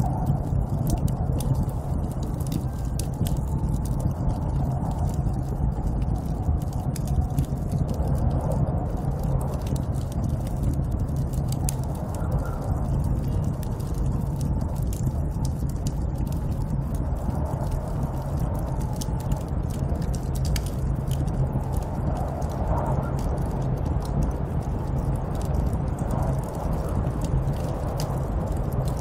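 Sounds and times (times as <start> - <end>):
small sharp crackles: 0.0 - 29.0
snowstorm wind rushing: 16.4 - 29.0.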